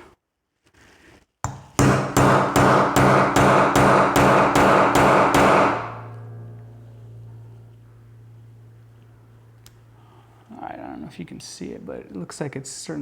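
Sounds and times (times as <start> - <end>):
hammer striking metal: 1.5 - 10.5
low steady hum: 1.6 - 13.0.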